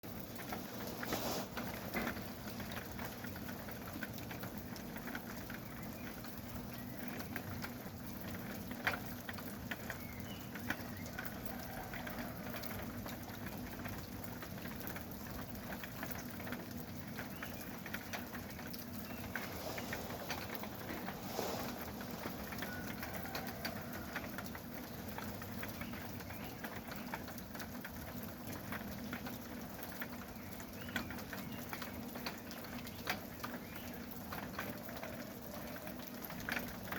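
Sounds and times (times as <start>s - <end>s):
rain patter in forest: 0.0s - 36.9s.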